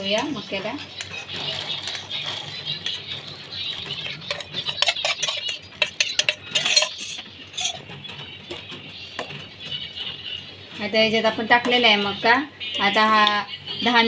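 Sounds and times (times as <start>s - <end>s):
metal utensils clinking on pot: 0.0s - 10.2s.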